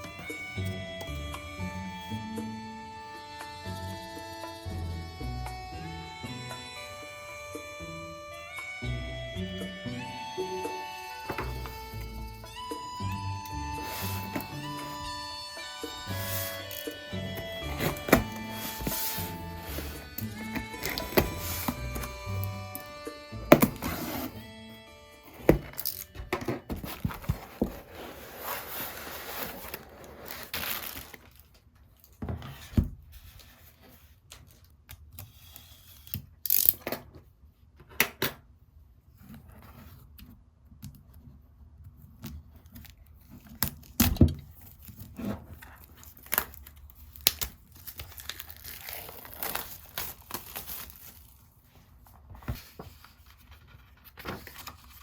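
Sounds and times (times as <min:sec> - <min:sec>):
packaging crinkling and tearing: 0:26.8 - 0:31.6, 0:44.6 - 0:51.6.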